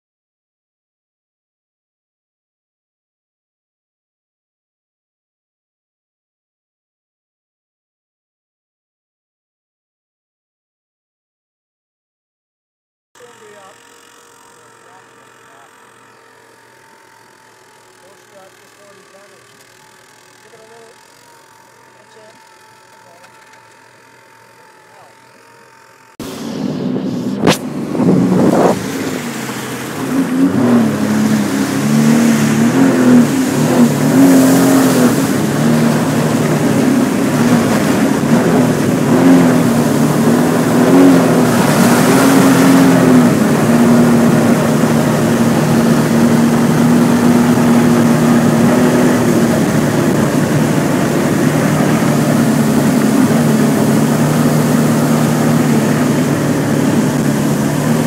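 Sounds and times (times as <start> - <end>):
personal watercraft engine: 13.2 - 58.0.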